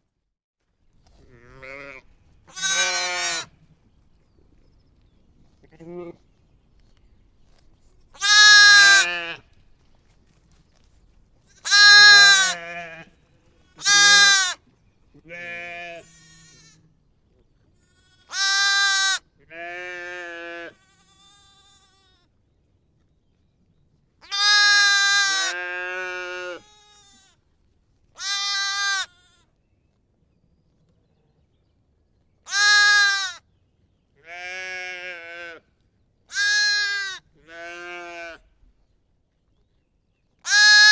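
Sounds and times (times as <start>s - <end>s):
sheep and lambs bleating: 1.2s - 3.6s, 5.6s - 6.3s, 8.2s - 9.6s, 11.5s - 17.0s, 17.8s - 22.3s, 24.2s - 27.4s, 28.2s - 29.5s, 32.5s - 33.5s, 34.2s - 35.7s, 36.3s - 38.5s, 40.4s - 40.9s.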